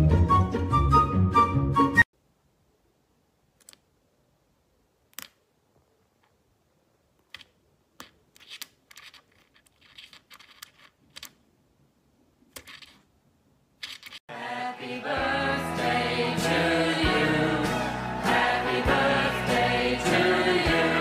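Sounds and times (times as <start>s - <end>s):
short scratching noises: 13.8s - 14.2s.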